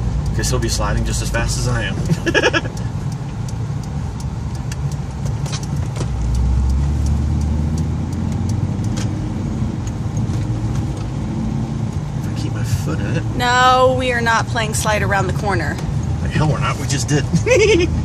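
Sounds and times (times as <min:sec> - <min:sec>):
truck engine and road rumble: 0:00.0 - 0:18.0.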